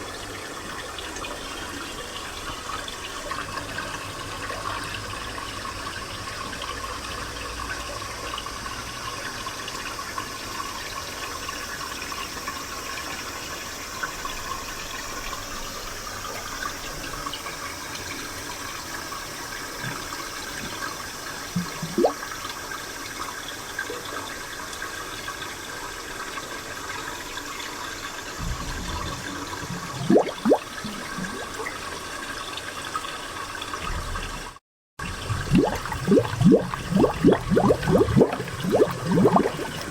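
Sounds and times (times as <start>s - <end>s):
spring water trickling: 0.0s - 23.0s, 26.0s - 39.9s
bubbling plops: 19.8s - 20.9s, 21.5s - 22.2s, 28.4s - 31.8s, 35.0s - 39.9s.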